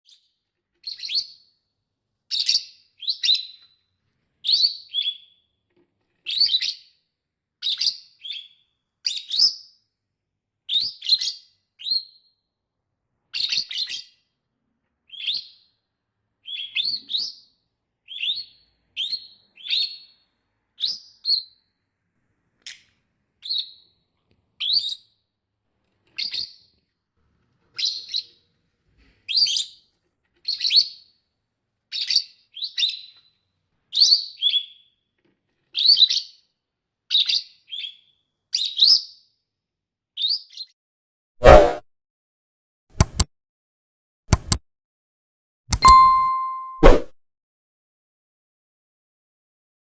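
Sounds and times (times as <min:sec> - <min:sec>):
bird chirping: 0:45.7 - 0:46.9.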